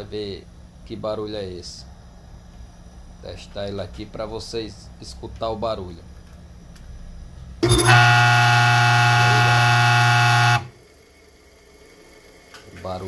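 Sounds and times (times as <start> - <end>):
electric motor humming: 7.6 - 10.7.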